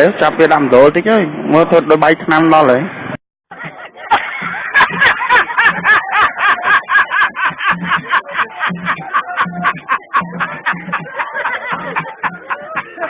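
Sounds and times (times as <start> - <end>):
fast percussion beat: 4.2 - 12.9.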